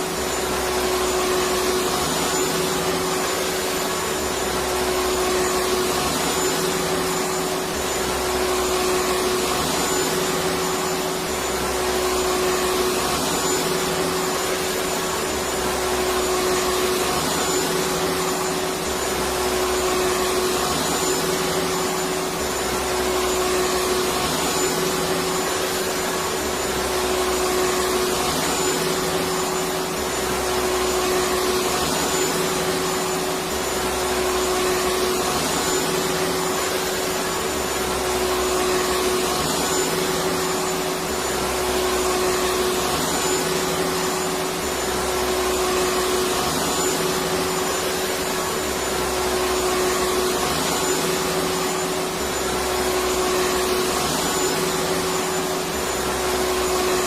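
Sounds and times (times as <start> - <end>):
vacuum cleaner running: 0.0 - 57.0.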